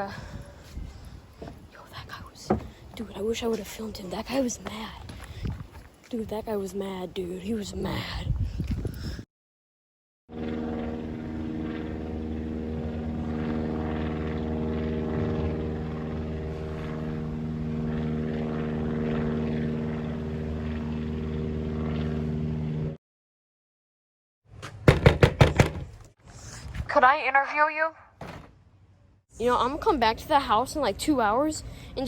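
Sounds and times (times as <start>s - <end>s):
motor drone: 10.3s - 23.0s
loud knocks: 24.8s - 25.9s.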